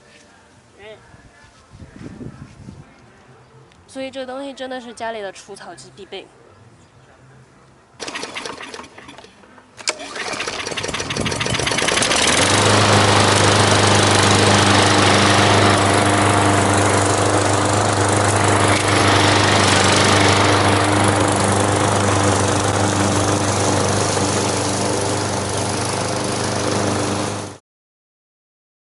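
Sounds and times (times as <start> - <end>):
lawn mower engine starting: 8.0 - 27.6.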